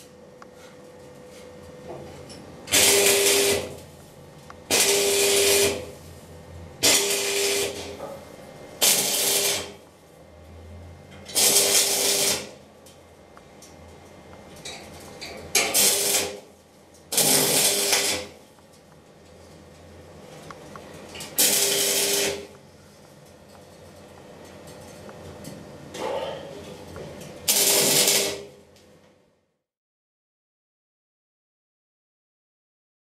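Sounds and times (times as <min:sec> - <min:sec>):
welder hum: 0:02.6 - 0:13.0, 0:15.2 - 0:18.7, 0:20.6 - 0:23.2, 0:25.4 - 0:28.6
arc welder hissing: 0:02.7 - 0:08.0, 0:08.6 - 0:09.9, 0:11.3 - 0:12.7, 0:15.5 - 0:18.6, 0:21.2 - 0:22.9, 0:27.2 - 0:28.6.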